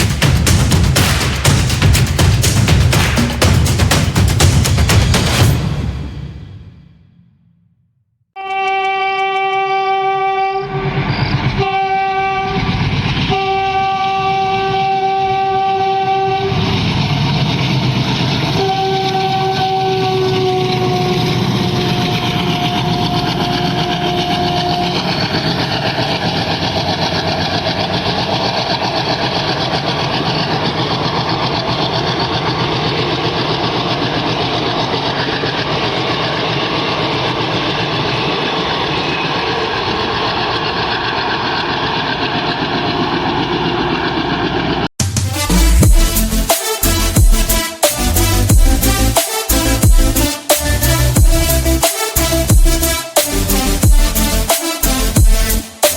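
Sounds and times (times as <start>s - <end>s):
train coaches clickety-clack: 0.0s - 5.6s, 10.8s - 44.8s
locomotive air horn blasts: 8.4s - 16.8s, 18.4s - 25.5s, 45.3s - 55.9s
diesel engine chugging: 10.7s - 55.6s.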